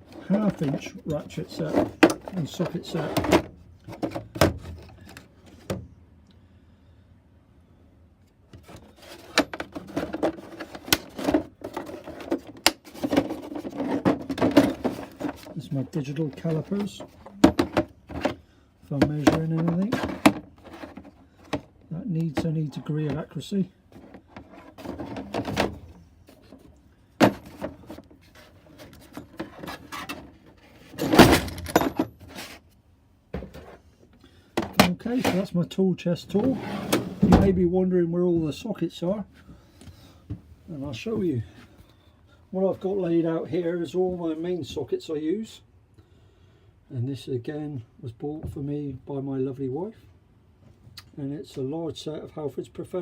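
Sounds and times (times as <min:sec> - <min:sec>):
metal tool chest drawer clatter: 0:00.0 - 0:05.1, 0:08.6 - 0:18.3, 0:19.0 - 0:21.1, 0:29.0 - 0:32.6
tools rattling and knocking: 0:00.0 - 0:05.2, 0:08.6 - 0:15.6, 0:28.8 - 0:32.5.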